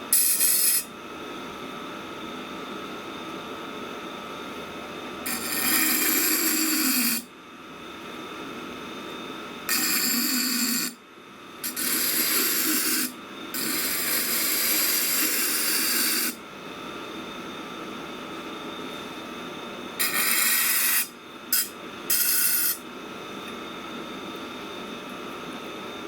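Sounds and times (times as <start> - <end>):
grinder motor humming: 0.1 - 0.9, 5.3 - 7.2, 11.6 - 16.4, 20.0 - 22.8
knife scraping on grinding stone: 0.1 - 0.9, 5.3 - 7.2, 9.7 - 11.0, 11.6 - 16.4, 20.0 - 22.8.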